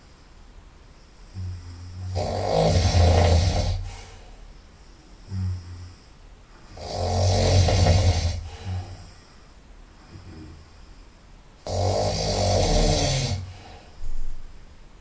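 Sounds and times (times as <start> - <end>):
soft snort: 1.1 - 14.0
person snoring loudly: 1.3 - 4.0, 5.3 - 6.0, 6.7 - 9.1, 11.6 - 13.7.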